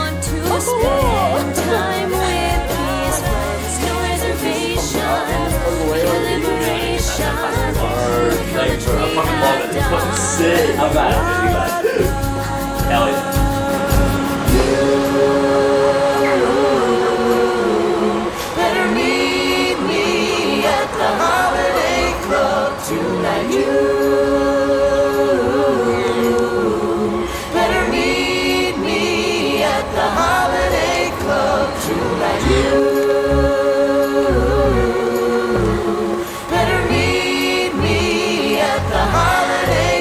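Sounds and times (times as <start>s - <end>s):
voices singing in close harmony: 0.0s - 40.0s.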